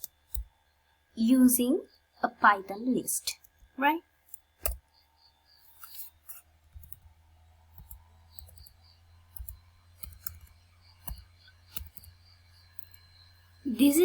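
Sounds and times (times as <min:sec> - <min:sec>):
low steady hum: 0:00.0 - 0:14.0
computer keys clicking: 0:06.8 - 0:07.1, 0:07.7 - 0:13.0.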